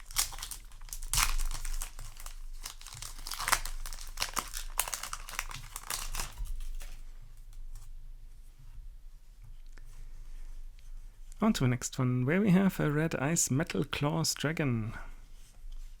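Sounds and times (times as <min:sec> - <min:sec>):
foil wrapper crinkling and tearing: 0:00.0 - 0:07.9.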